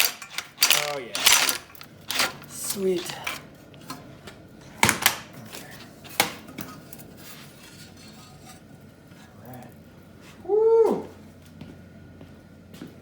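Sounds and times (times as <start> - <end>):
metal tools clinking: 0.0 - 3.4.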